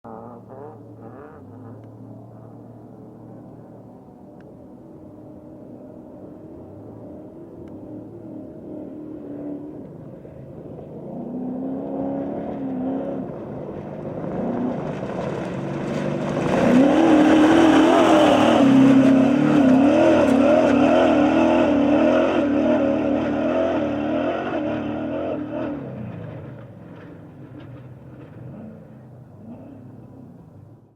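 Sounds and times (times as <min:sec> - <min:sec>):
truck engine passing by: 0:11.0 - 0:30.7.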